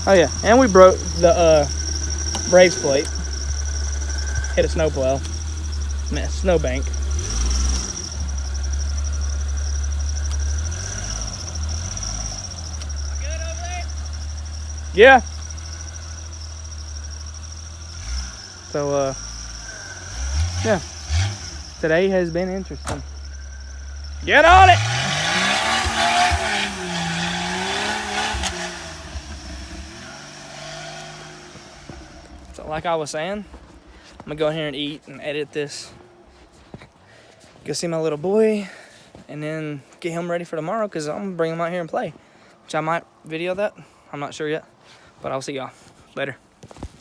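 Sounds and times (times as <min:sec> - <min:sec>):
high-pitched pulsing whine: 0:00.0 - 0:35.4
tires spinning in snow: 0:00.0 - 0:39.3
vehicle engine idling: 0:00.0 - 0:40.8.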